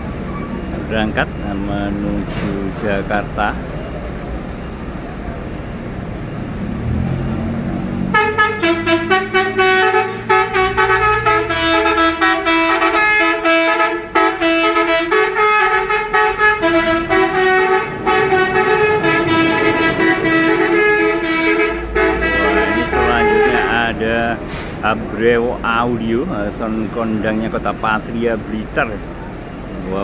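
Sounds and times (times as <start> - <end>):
diesel engine rumble: 0.0 - 30.0
truck horn honking a tune: 8.0 - 24.3.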